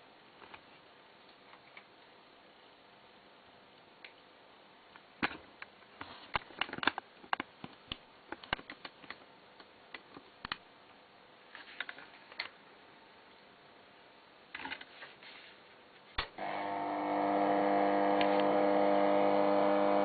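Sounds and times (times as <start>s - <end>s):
clicks and taps of small objects: 6.3s - 10.6s.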